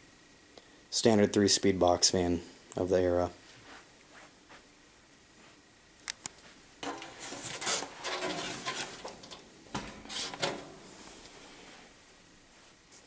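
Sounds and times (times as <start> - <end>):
rubbing and scraping: 6.8 - 11.9.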